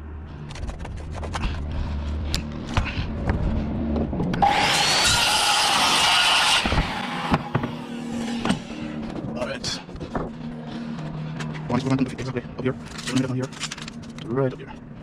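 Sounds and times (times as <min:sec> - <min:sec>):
saw cutting wooden board: 0:04.4 - 0:09.0.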